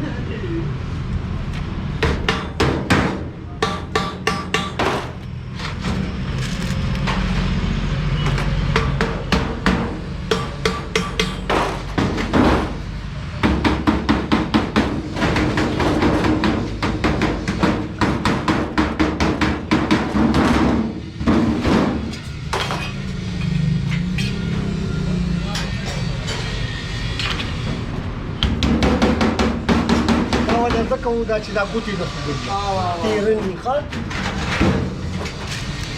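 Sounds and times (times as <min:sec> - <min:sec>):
hammer on sheet metal: 0:02.0 - 0:05.2, 0:08.3 - 0:12.8, 0:13.4 - 0:23.0, 0:28.4 - 0:31.0.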